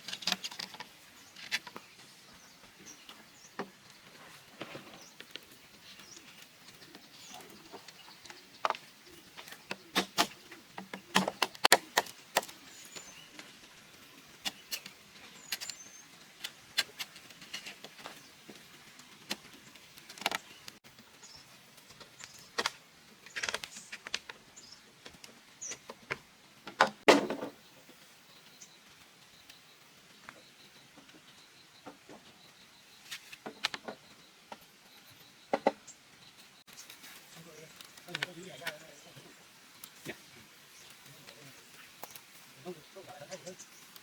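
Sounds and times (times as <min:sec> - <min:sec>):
bamboo knocking and clacking: 0:06.2 - 0:13.6, 0:35.5 - 0:35.8.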